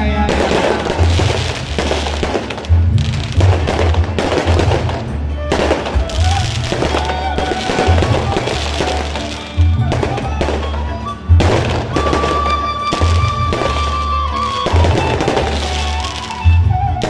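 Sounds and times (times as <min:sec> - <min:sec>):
music with heavy bass beat: 0:00.2 - 0:12.2.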